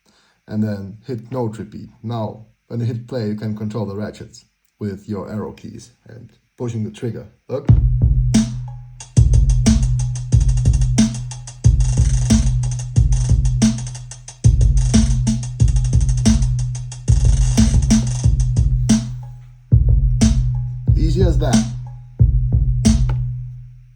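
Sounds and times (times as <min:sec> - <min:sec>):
booming kick drum and bass: 0:07.7 - 0:23.6
hi-hat rolls: 0:08.3 - 0:19.4, 0:20.2 - 0:21.9.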